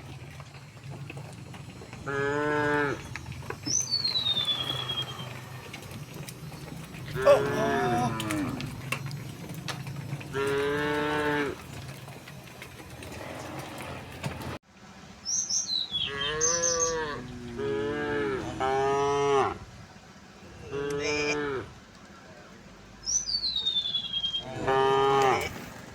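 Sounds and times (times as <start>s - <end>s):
cows mooing: 1.0s - 14.6s, 16.1s - 19.7s, 20.5s - 21.8s, 24.4s - 25.7s.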